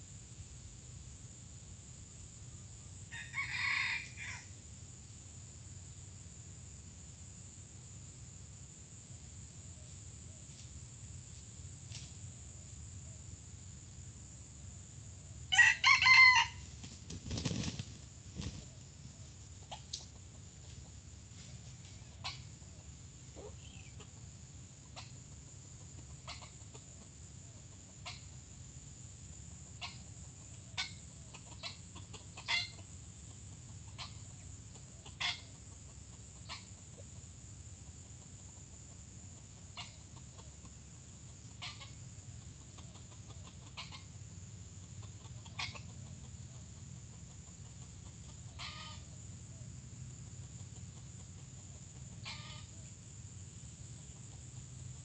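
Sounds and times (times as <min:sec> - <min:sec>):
junglefowl clucking: 0:18.4 - 0:24.2, 0:24.8 - 0:28.4, 0:29.6 - 0:37.1, 0:38.0 - 0:44.2, 0:44.8 - 0:49.6, 0:50.4 - 0:52.9.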